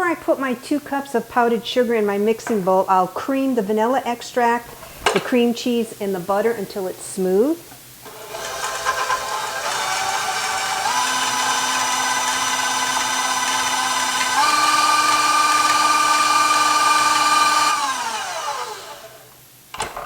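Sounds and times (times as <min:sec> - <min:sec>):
electric mixer motor whine: 0:08.1 - 0:19.3.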